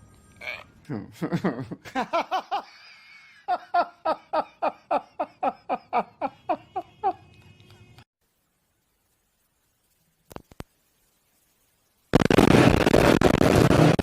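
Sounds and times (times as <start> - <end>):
rapid laughter: 1.1 - 7.3.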